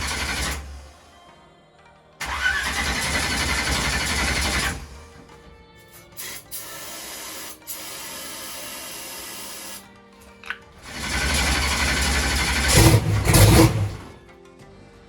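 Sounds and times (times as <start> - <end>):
starter motor cranking engine: 0.0 - 1.0, 2.2 - 5.2, 10.8 - 14.2.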